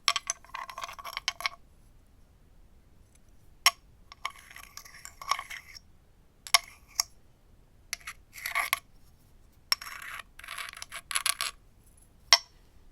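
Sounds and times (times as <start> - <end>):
stone clicking on slate: 6.5 - 7.1, 7.9 - 8.8, 9.7 - 11.6, 12.3 - 12.6
stone scraping across slate: 9.7 - 11.5.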